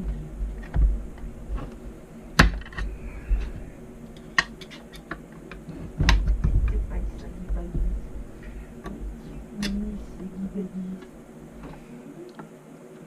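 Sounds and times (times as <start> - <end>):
plastic clicks and knocks: 4.4 - 6.8.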